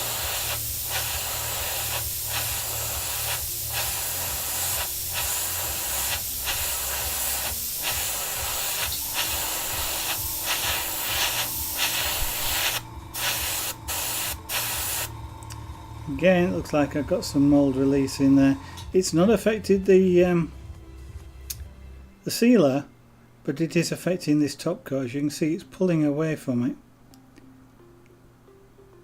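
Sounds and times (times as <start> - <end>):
spray paint hissing: 0.0 - 15.2.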